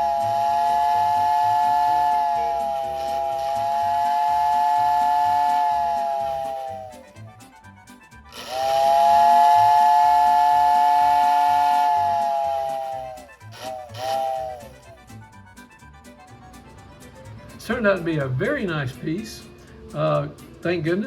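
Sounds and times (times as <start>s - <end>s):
two-tone toy whistle blasts: 0.0s - 7.3s, 8.3s - 15.4s.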